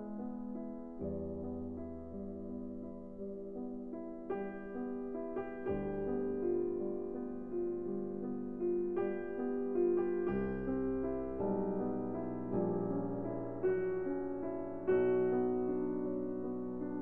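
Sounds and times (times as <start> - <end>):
gentle piano piece: 0.0 - 17.0.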